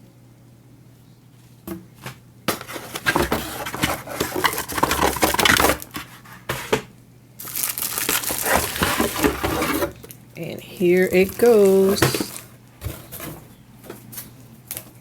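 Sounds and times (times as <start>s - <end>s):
cardboard box rustling: 1.7s - 6.8s, 7.4s - 10.1s, 10.8s - 13.6s.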